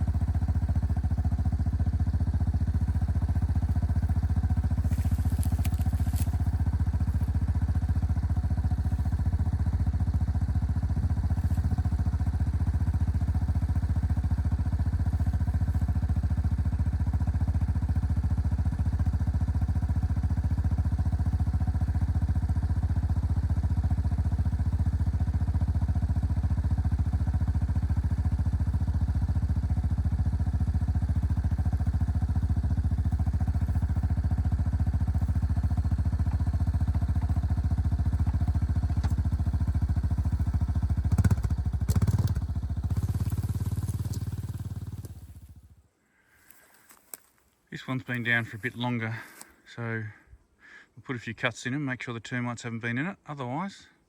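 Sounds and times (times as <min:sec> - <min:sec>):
engine running steadily: 0:00.0 - 0:45.8.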